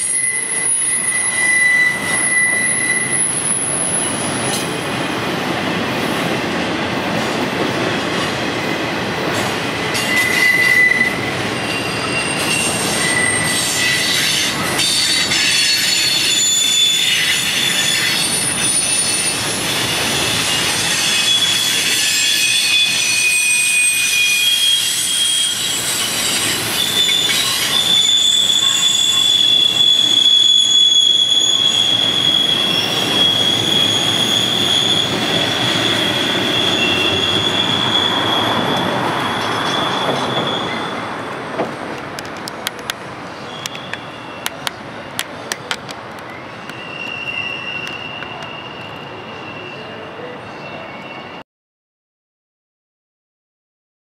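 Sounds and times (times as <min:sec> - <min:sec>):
wheel flange squeal: 0:00.0 - 0:04.8, 0:10.0 - 0:41.1, 0:43.4 - 0:45.3, 0:46.3 - 0:51.4
train wheels rumbling on rails: 0:00.0 - 0:49.4.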